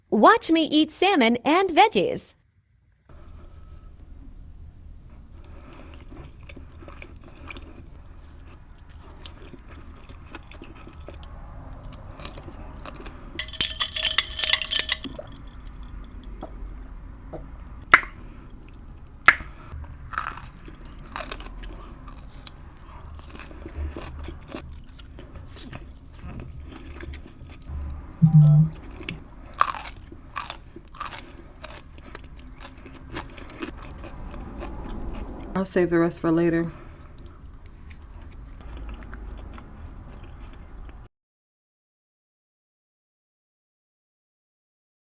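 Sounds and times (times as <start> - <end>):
person chewing food: 5.0 - 35.4, 36.7 - 41.1.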